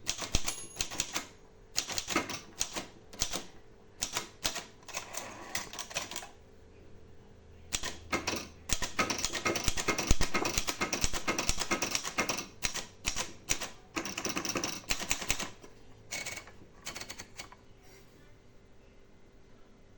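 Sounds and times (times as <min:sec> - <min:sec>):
typewriter keys clacking: 0:00.0 - 0:03.4, 0:07.8 - 0:17.6.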